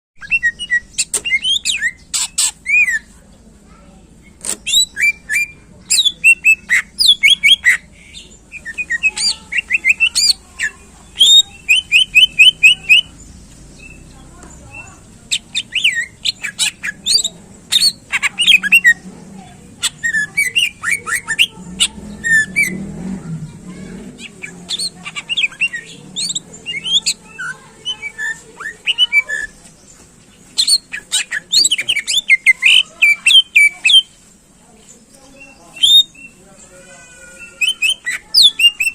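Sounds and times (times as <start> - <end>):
bird singing whistled notes: 0.2 - 3.1, 8.5 - 13.2, 35.3 - 36.4.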